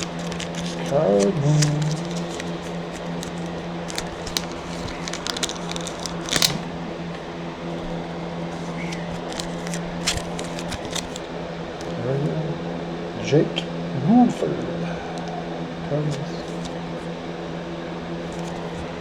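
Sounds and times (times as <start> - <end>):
card snap: 0.0 - 6.7, 8.8 - 11.2
trading cards rustling and clicking: 0.0 - 6.8, 7.8 - 12.0, 16.0 - 17.0, 18.2 - 19.0
steady low hum: 0.0 - 19.0.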